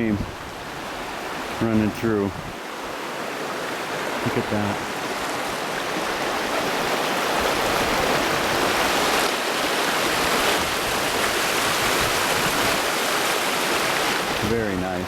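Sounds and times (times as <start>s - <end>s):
creek water rushing: 0.0s - 15.0s.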